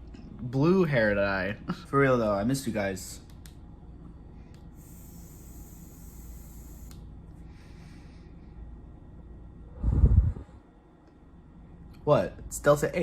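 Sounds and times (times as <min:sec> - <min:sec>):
person inhaling with a hiss: 0:09.7 - 0:10.6
breathy exhale: 0:09.7 - 0:10.7.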